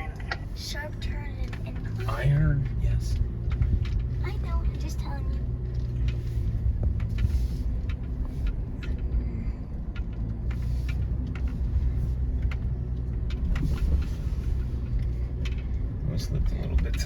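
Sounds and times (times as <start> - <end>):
scattered clicks and knocks: 0.0 - 2.0, 3.1 - 9.2
engine running low inside cabin: 0.0 - 17.0.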